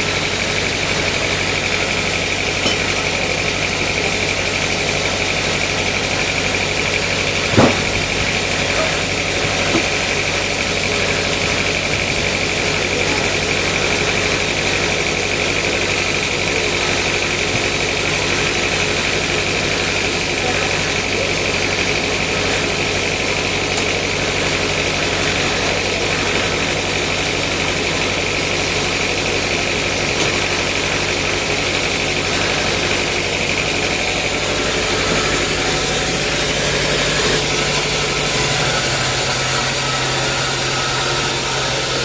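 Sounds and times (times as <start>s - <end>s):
sawmill machinery whining: 0.0s - 42.0s
short knock: 7.5s - 8.2s.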